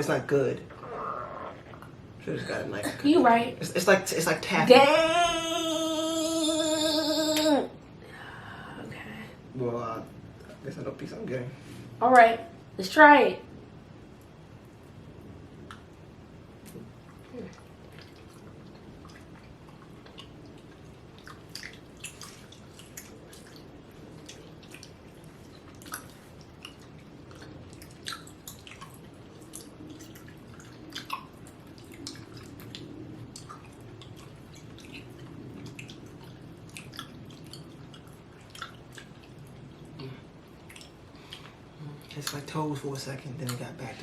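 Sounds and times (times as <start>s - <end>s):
wet mouth clicks and smacks: 15.6s - 16.0s, 16.6s - 40.0s, 40.6s - 41.6s
chewing soft candy: 16.6s - 42.6s.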